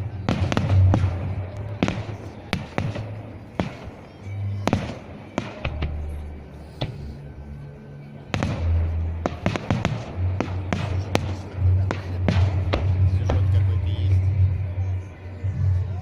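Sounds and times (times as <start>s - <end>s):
fireworks bursting bangs: 0.0s - 6.2s, 8.3s - 13.8s
low rumble: 0.0s - 16.0s.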